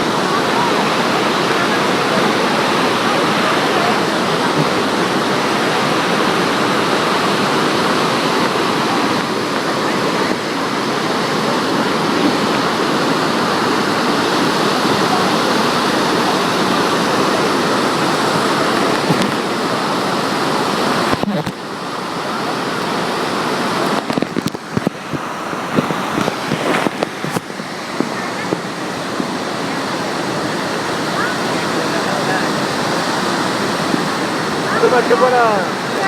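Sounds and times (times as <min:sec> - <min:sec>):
waterfall rushing: 0:00.0 - 0:36.0.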